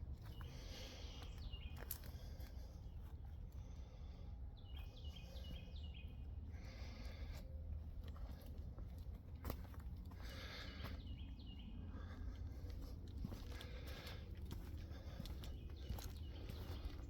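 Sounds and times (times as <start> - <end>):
steady low rumble: 0.0 - 17.0.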